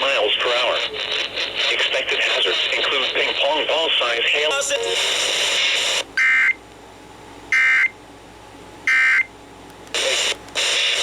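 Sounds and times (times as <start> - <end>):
radio hiss: 0.0 - 6.0, 9.9 - 11.0.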